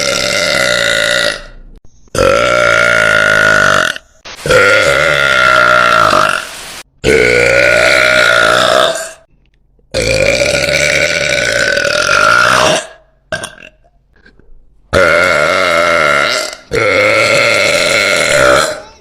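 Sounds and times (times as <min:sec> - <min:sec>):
woman burping: 0:09.9 - 0:19.0.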